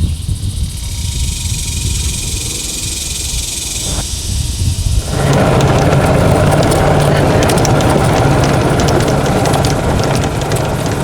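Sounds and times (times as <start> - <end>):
lawn mower engine running: 0.6 - 11.0
rushing noise of mowing: 0.7 - 11.0.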